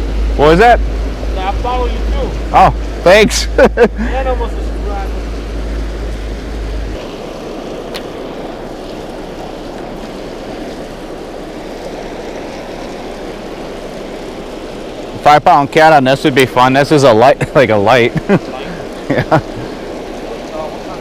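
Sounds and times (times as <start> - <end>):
water rushing over spillway: 0.0 - 21.0.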